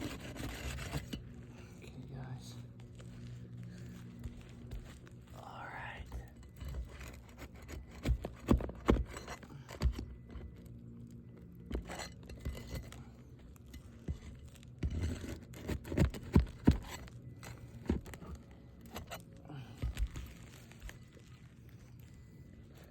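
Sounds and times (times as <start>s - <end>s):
hand tool scraping asphalt shingles: 0.0s - 1.8s, 6.2s - 10.6s, 11.6s - 22.9s.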